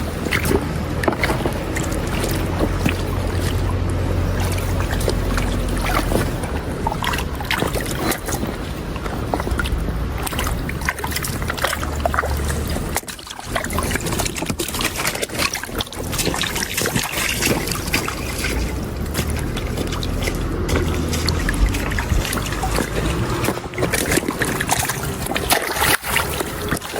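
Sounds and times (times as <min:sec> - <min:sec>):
splashing in shallow water: 0:00.0 - 0:26.9
low rumble: 0:15.6 - 0:25.4.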